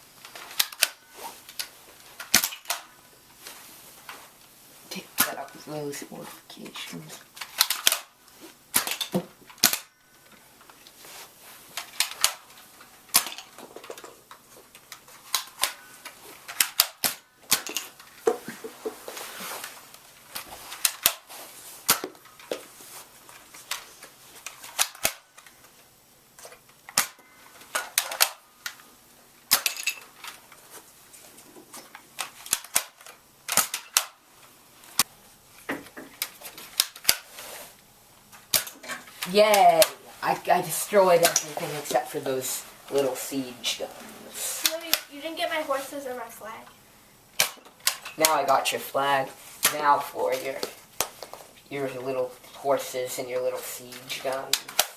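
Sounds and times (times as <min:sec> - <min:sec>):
foam darts clacking on plastic toys: 0:00.4 - 0:03.0, 0:07.4 - 0:10.0, 0:11.8 - 0:19.8, 0:20.4 - 0:22.7, 0:23.6 - 0:25.6, 0:26.4 - 0:28.8, 0:29.5 - 0:30.6, 0:31.6 - 0:34.2, 0:35.0 - 0:37.5, 0:38.4 - 0:40.0, 0:44.4 - 0:45.1, 0:47.3 - 0:48.5.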